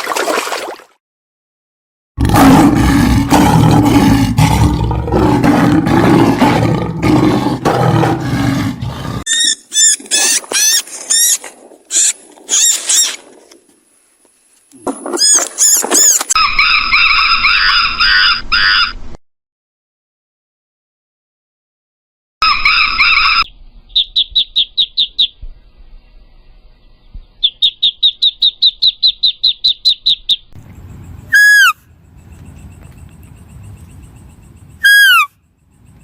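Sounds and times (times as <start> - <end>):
deep rough animal call: 2.2 - 9.3
shrill high animal call: 16.4 - 19.0, 22.4 - 25.3, 31.3 - 31.9, 34.8 - 35.4
short high chirping calls: 22.4 - 25.4, 27.4 - 30.6, 31.3 - 32.6, 34.8 - 36.0.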